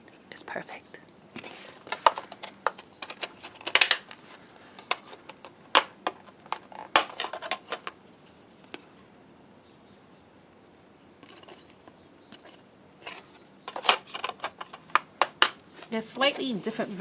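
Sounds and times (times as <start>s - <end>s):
hands handling plastic packaging: 1.3s - 9.1s, 11.2s - 17.0s.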